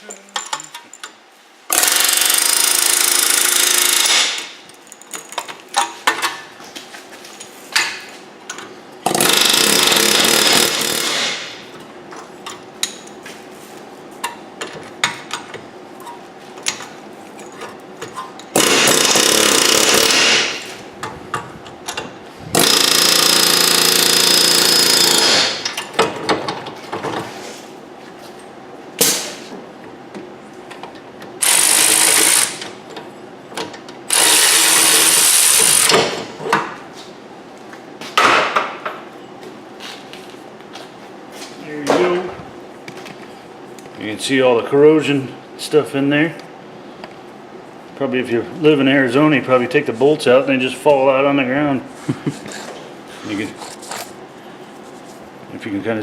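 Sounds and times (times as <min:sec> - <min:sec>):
pneumatic air hammer: 0:01.7 - 0:04.6, 0:09.0 - 0:11.7, 0:18.5 - 0:20.8, 0:22.5 - 0:26.1, 0:29.0 - 0:29.5, 0:31.4 - 0:32.8, 0:34.1 - 0:36.4.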